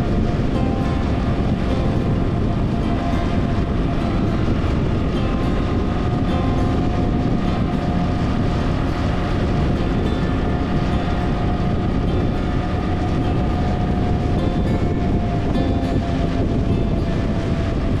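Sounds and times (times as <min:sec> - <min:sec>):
motorcycle engine drone: 0:00.0 - 0:18.0
wind noise rumble: 0:00.0 - 0:18.0.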